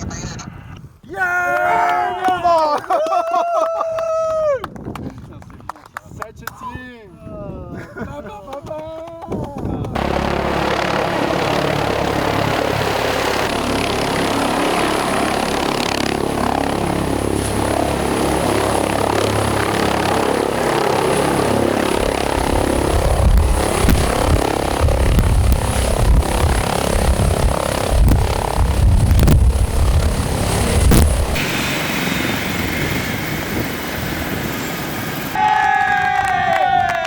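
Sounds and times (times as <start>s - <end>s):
helicopter rotor and engine: 8.8s - 35.4s
uneven low rumble: 21.8s - 34.3s.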